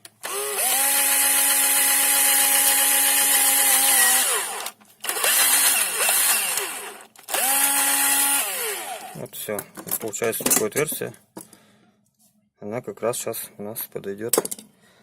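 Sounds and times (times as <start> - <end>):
electric drill running: 0.2 - 9.2.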